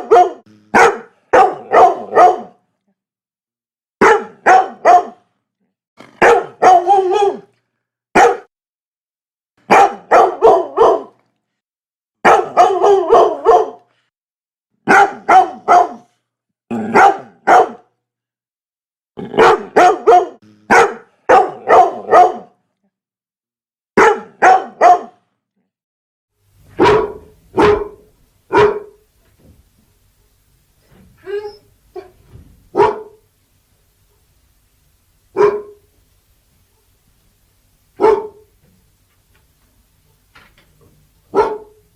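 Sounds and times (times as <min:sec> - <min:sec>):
dog barking: 0:00.0 - 0:02.6, 0:04.0 - 0:05.3, 0:06.0 - 0:07.5, 0:08.2 - 0:08.5, 0:09.7 - 0:11.2, 0:12.2 - 0:13.9, 0:14.8 - 0:16.1, 0:16.7 - 0:17.9, 0:19.3 - 0:22.6, 0:24.0 - 0:25.2, 0:26.7 - 0:29.0, 0:31.3 - 0:33.3, 0:35.3 - 0:35.9, 0:38.0 - 0:38.5, 0:41.3 - 0:41.8.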